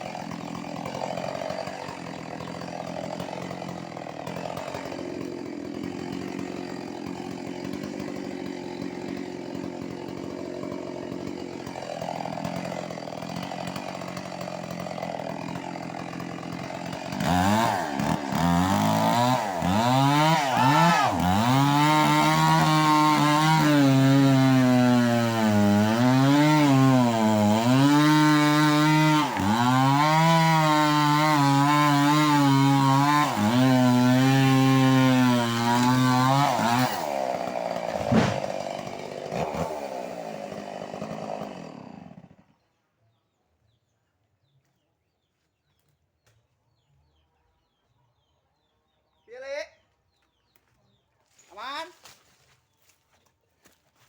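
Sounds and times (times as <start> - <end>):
chainsaw cutting wood: 0.0 - 42.7.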